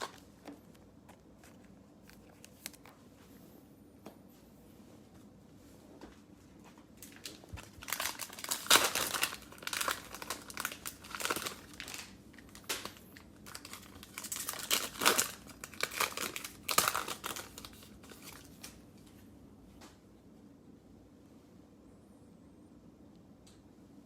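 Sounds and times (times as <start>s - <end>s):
cellophane wrapper crinkling: 0.0s - 3.0s, 6.9s - 19.2s.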